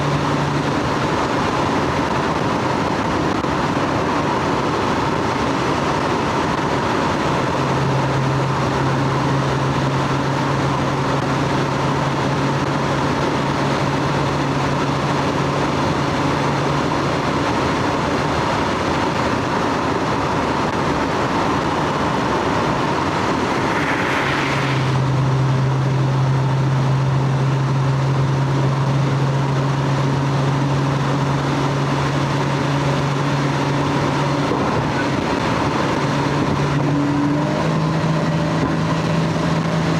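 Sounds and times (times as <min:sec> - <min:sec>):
car engine and exhaust running: 0:00.0 - 0:39.9
steady rushing noise: 0:00.0 - 0:39.9
brief hiss: 0:23.2 - 0:25.3.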